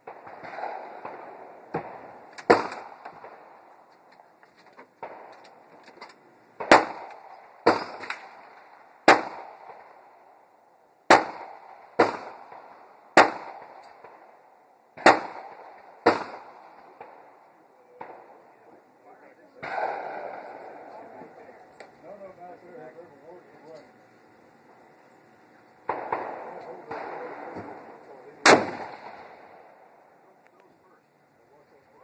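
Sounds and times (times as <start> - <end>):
gunshots with echo: 0.0 - 3.8, 6.6 - 10.1, 11.1 - 14.4, 15.0 - 18.5, 19.6 - 21.5, 25.9 - 30.0.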